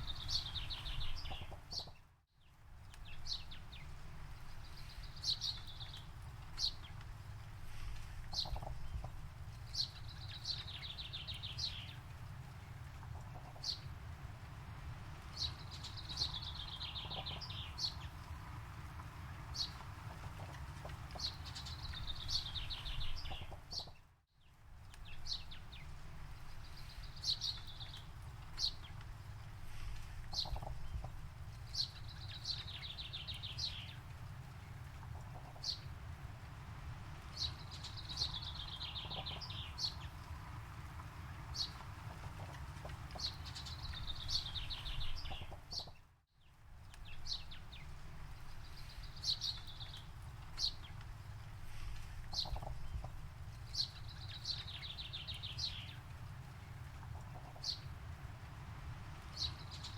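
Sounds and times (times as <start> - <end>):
songbirds trilling and chirping: 0.0 - 59.9
steady low rumble: 24.8 - 45.8.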